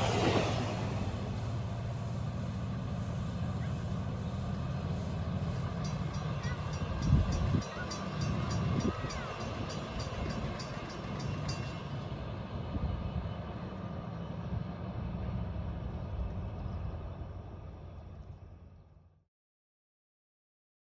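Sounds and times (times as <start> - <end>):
train rumbling on tracks: 0.0 - 19.2
grade crossing bell ringing: 4.8 - 12.4.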